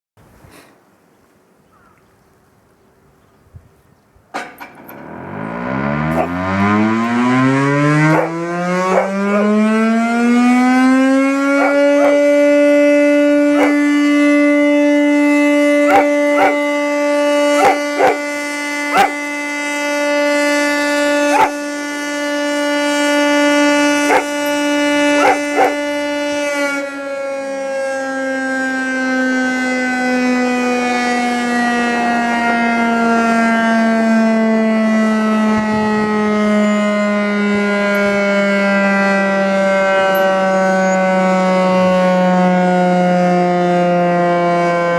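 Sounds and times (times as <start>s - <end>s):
siren winding: 4.4s - 8.3s, 37.8s - 38.2s, 40.0s - 41.2s
dog howling: 8.1s - 9.6s, 11.4s - 12.5s, 13.4s - 14.0s, 15.8s - 16.7s, 17.5s - 18.2s, 18.9s - 19.2s, 21.3s - 21.6s, 24.1s - 24.6s, 25.2s - 25.8s.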